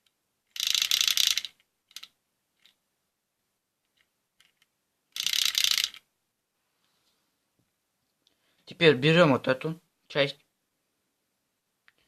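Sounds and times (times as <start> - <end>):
small motor spinning plastic gears: 0.5 - 2.1, 5.2 - 6.0.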